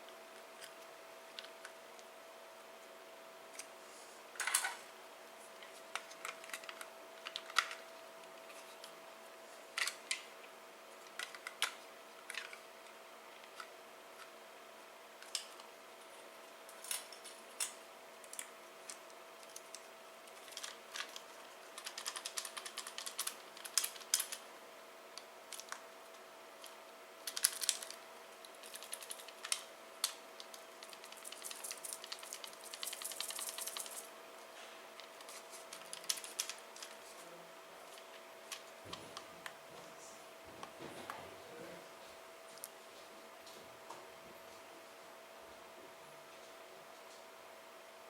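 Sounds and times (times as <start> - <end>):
faint steady hum: 0.0 - 48.0
small hard parts clicking and rattling: 16.7 - 24.4, 28.6 - 34.1, 35.0 - 37.0.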